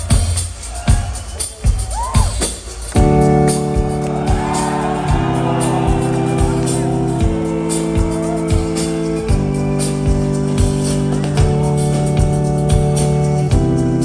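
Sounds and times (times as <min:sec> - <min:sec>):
drum beat: 0:00.0 - 0:13.8
organ chords: 0:03.0 - 0:14.0
audience whooping and shouting: 0:03.9 - 0:11.5.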